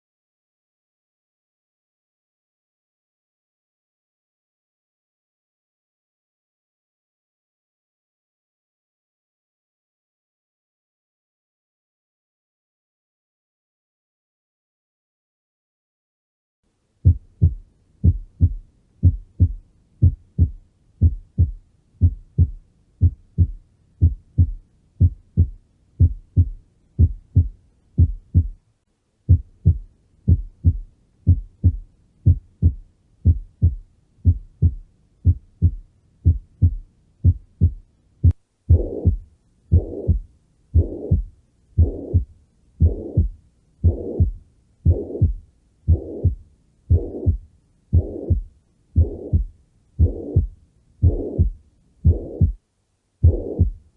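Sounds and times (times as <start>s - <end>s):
heart murmur beats: 17.0s - 28.6s, 29.3s - 52.6s, 53.2s - 53.9s
heartbeat: 17.0s - 28.6s, 29.3s - 52.6s, 53.2s - 53.9s.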